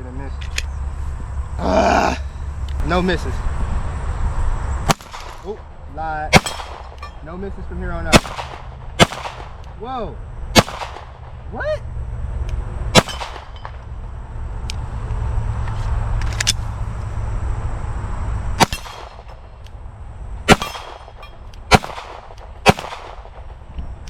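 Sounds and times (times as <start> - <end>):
pistol shots: 4.9 - 5.6, 6.3 - 7.2, 8.1 - 9.8, 10.6 - 11.4, 12.9 - 13.8, 18.6 - 19.5, 20.5 - 23.6.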